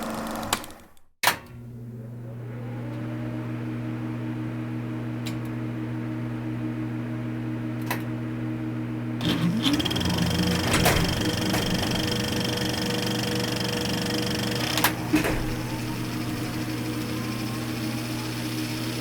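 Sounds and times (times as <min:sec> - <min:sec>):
film projector motor humming: 0:09.2 - 0:19.0.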